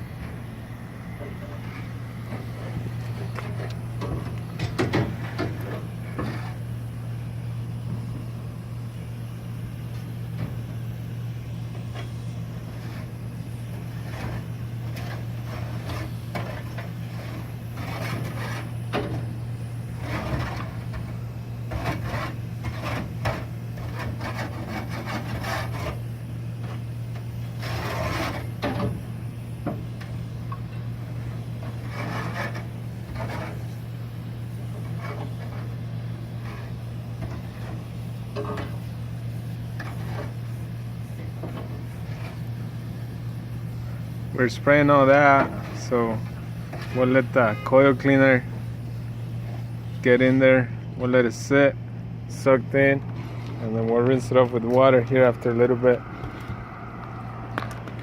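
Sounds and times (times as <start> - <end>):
steady low hum: 0.0 - 58.0
scraping and rubbing handling: 12.1 - 28.6, 31.3 - 43.6.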